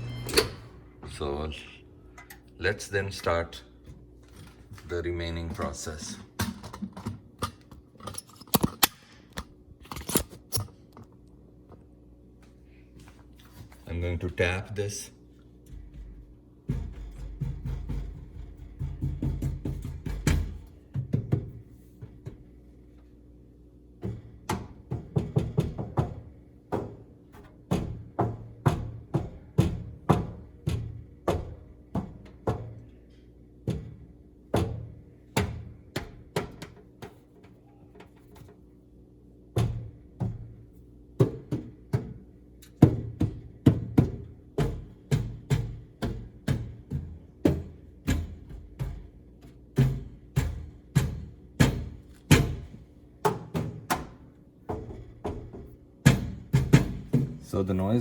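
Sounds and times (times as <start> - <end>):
faint microwave hum: 0.0 - 58.0
tapping on a microwave: 15.7 - 22.4, 24.0 - 33.0, 33.6 - 37.6, 41.2 - 57.4.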